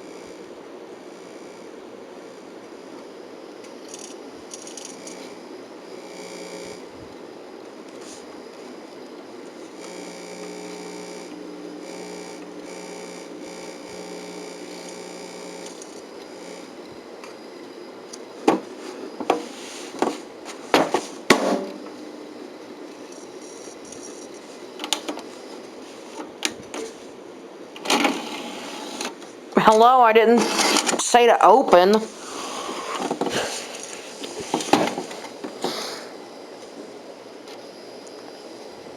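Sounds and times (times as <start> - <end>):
stereo electrical hum: 0.0 - 38.9
cassette mechanism clicks and clunks: 24.8 - 25.3, 27.8 - 29.2.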